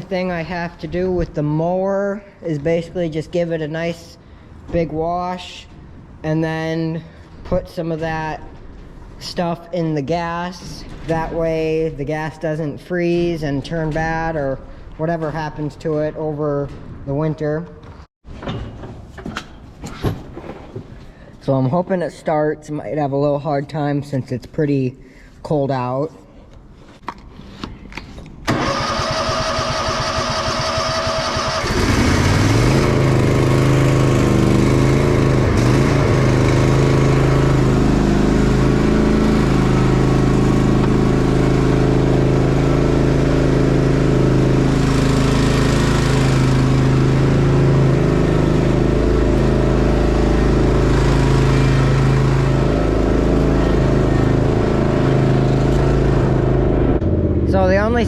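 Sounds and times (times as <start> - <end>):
electric starter cranking: 28.4 - 58.0
mower engine running: 28.5 - 58.0.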